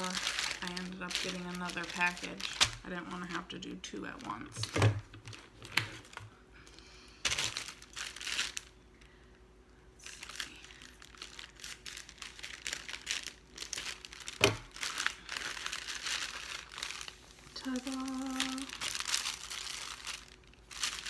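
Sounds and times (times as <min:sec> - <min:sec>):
package being torn open: 0:00.0 - 0:02.9, 0:07.2 - 0:08.7, 0:10.1 - 0:21.0
packaging crinkling and rustling: 0:00.0 - 0:09.2, 0:10.0 - 0:21.0.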